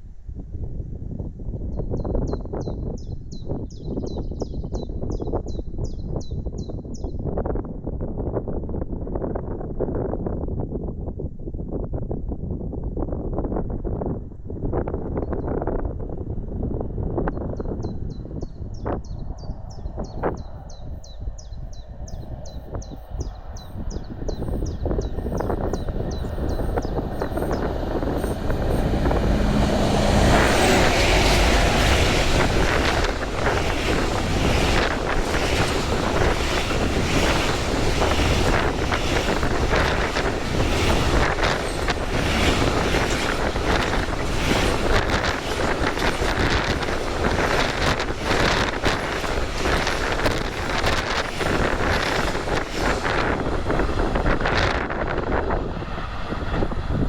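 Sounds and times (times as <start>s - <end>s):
wind buffeting microphone: 0.0s - 57.0s
train passing at speed: 17.9s - 57.0s
wheels clattering over rails: 25.5s - 55.0s.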